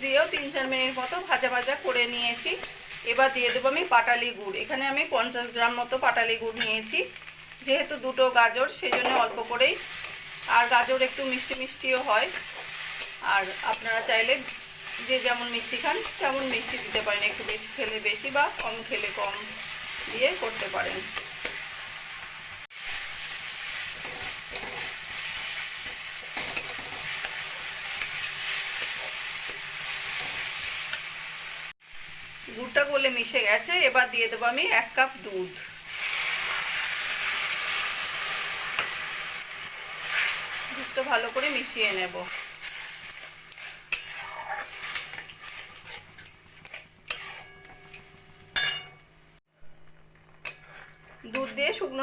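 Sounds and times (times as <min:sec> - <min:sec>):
food sizzling in a pan: 0:00.0 - 0:52.0
spatula scraping a pan: 0:23.4 - 0:31.1, 0:39.9 - 0:49.0, 0:50.2 - 0:52.0.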